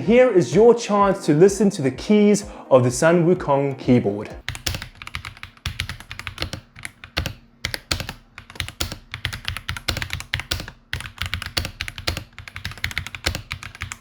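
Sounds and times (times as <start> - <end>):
mechanical keyboard typing: 4.4 - 14.0.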